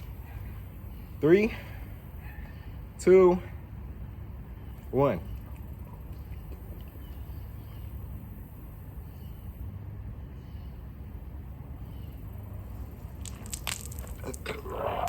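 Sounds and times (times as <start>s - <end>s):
crackling crunching sounds: 12.6s - 15.0s.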